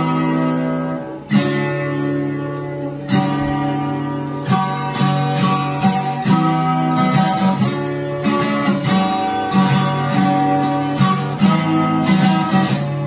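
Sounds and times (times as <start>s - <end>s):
acoustic guitar strumming chords: 0.0s - 13.0s.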